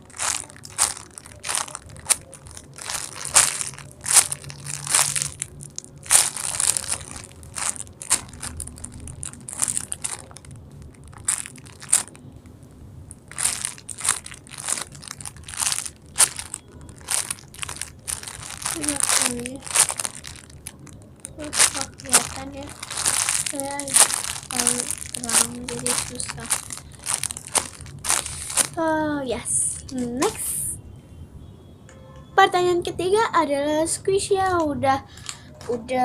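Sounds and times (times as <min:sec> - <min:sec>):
foam toy crinkling when squeezed: 0:00.0 - 0:12.3, 0:13.2 - 0:28.8.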